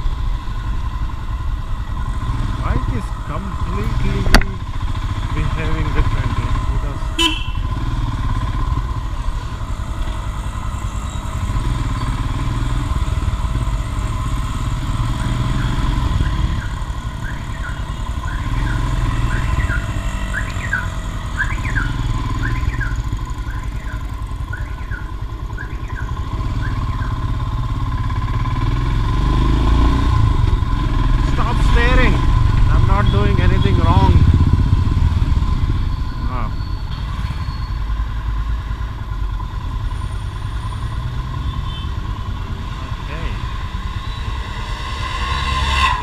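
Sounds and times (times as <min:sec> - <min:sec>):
motorcycle engine rumbling: 0:00.0 - 0:46.0
electronic alarm chirps: 0:15.5 - 0:27.3.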